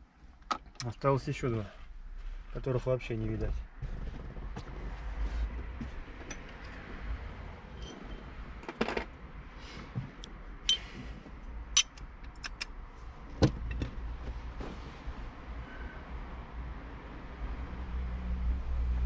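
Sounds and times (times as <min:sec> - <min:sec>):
socket wrench metallic clicks: 0:11.8 - 0:12.8.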